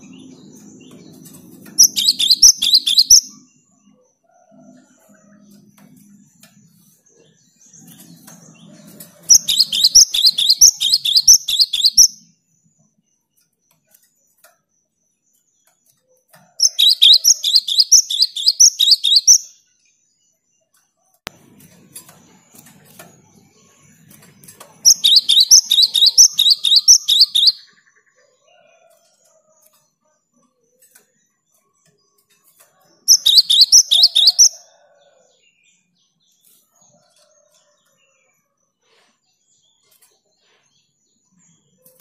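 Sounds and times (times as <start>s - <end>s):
bird singing high sharp notes: 1.6s - 3.5s, 9.3s - 12.3s, 16.6s - 19.6s, 24.8s - 27.8s, 33.1s - 34.6s.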